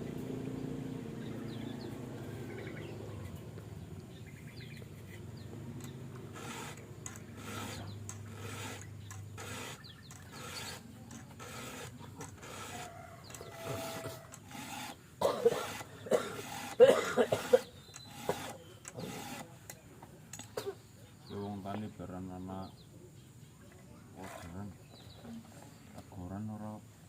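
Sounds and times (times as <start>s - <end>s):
bird chirps: 1.2s - 6.0s, 8.8s - 11.2s, 17.6s - 19.2s
rasping strokes: 5.8s - 19.5s.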